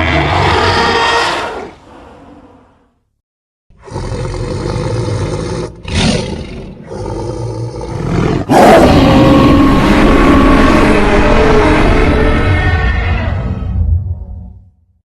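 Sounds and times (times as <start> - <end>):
rising and falling creature calls: 0.0 - 2.8, 7.9 - 13.8
sustained creature roar: 0.0 - 2.9, 3.8 - 14.4
creature growl: 3.8 - 13.6.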